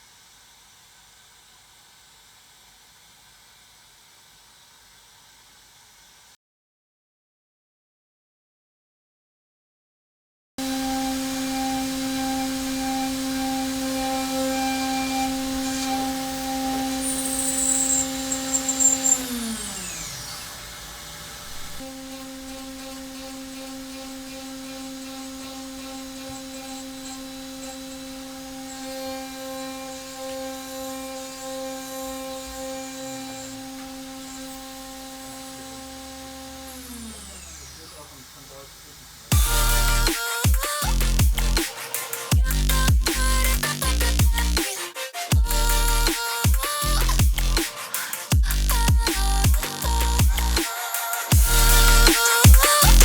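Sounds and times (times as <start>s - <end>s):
machine spindle whining: 10.6s - 53.0s
sharp high squeals: 10.8s - 20.6s.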